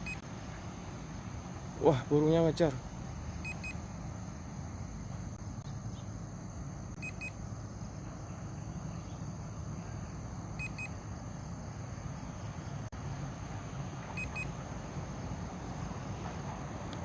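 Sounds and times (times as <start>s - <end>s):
remote controller warning beeps: 0.0s - 0.2s, 3.4s - 3.8s, 7.0s - 7.4s, 10.6s - 11.0s, 14.2s - 14.5s
background hum and rush: 0.0s - 17.0s.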